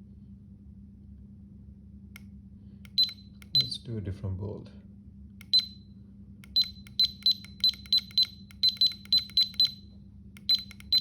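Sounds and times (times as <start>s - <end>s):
short high-pitched beeps: 3.0s - 3.7s, 5.5s - 5.8s, 6.5s - 11.0s.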